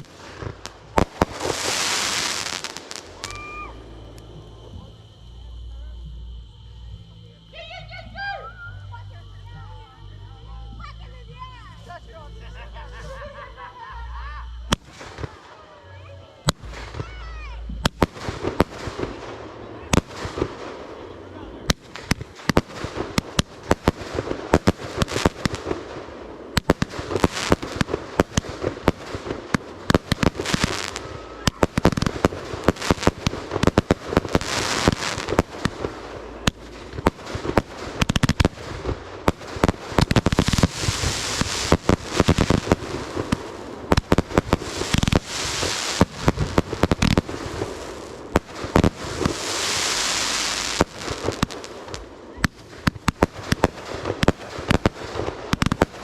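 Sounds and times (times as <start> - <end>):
fireworks pops and bangs: 0.0 - 5.0, 14.7 - 15.5, 16.4 - 21.0, 21.6 - 56.0
fireworks crackling fizz: 0.0 - 56.0.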